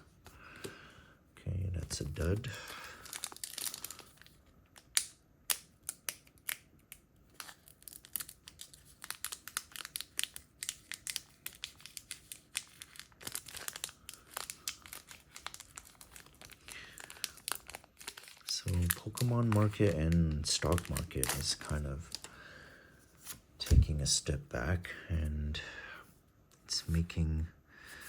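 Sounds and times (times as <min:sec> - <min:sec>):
foil wrapper crinkling and tearing: 0:02.2 - 0:06.7, 0:07.3 - 0:22.3.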